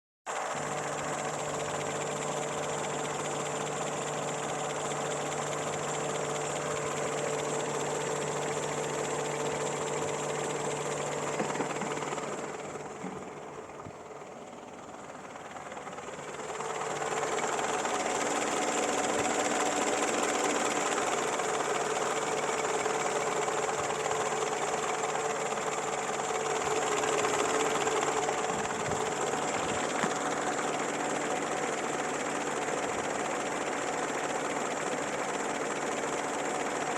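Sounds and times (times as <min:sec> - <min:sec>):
petrol engine running: 0:00.4 - 0:36.9.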